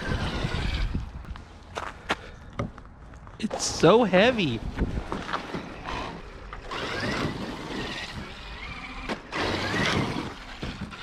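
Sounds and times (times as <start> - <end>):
drivetrain and tyres rushing: 0.0 - 2.2, 2.8 - 11.0
electric motor whining: 5.6 - 11.0.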